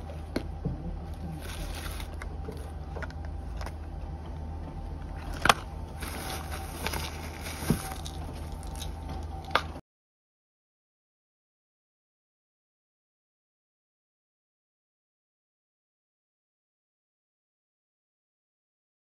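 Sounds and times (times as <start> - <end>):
steady low hum: 0.0 - 9.8.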